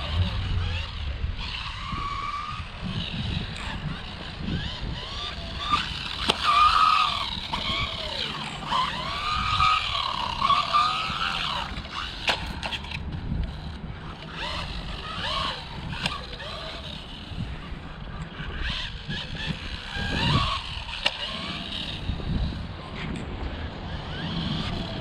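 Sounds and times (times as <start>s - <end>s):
electric motor whine: 0.0s - 25.0s.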